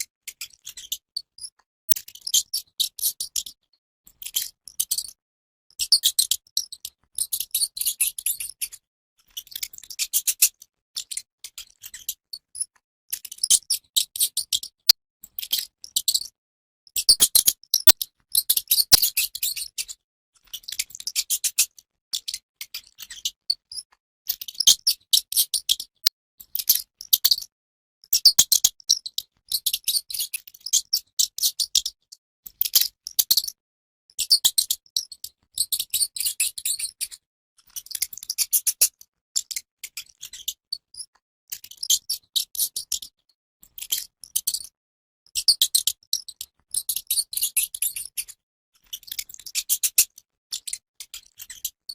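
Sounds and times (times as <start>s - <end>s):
mouse clicking chatter: 17.1s - 18.0s, 28.2s - 28.7s.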